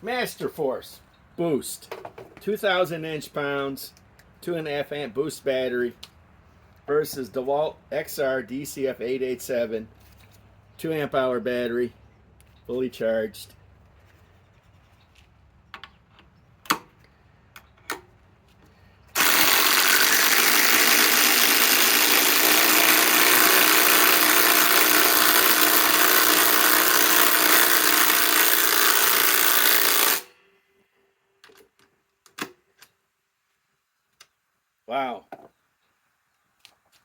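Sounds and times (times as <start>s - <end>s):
impact driver hammering: 19.2s - 30.3s.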